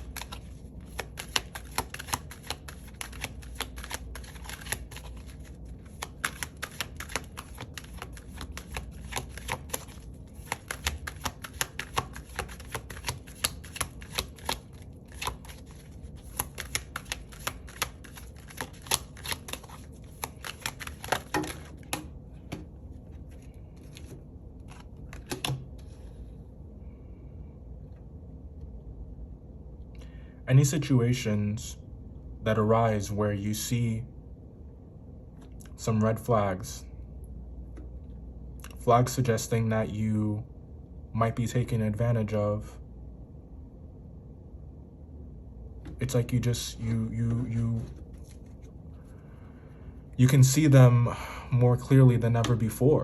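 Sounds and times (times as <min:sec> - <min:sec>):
cards being shuffled by hand: 0:00.0 - 0:26.1, 0:45.8 - 0:48.8, 0:52.2 - 0:53.0.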